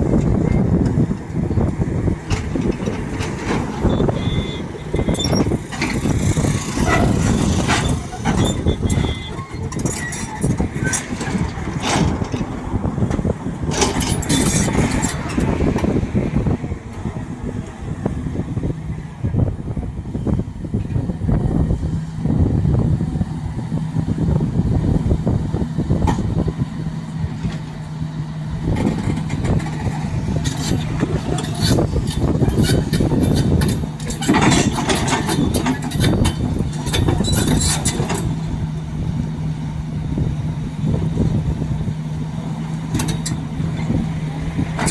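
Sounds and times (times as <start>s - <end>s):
excavator diesel engine running: 0.0s - 44.9s
metallic clanking and rattling: 2.2s - 16.0s, 28.6s - 38.7s, 42.9s - 44.9s.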